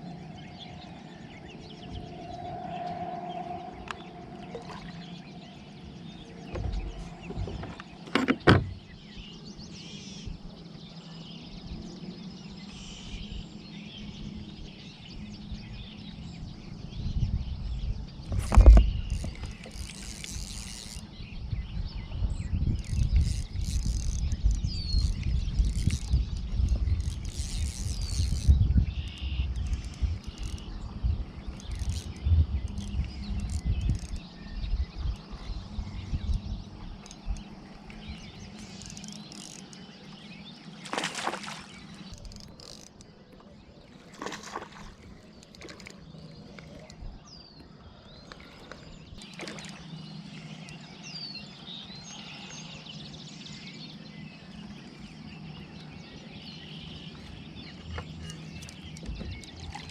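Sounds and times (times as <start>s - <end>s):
heavy low rumbling: 0.9s - 7.9s.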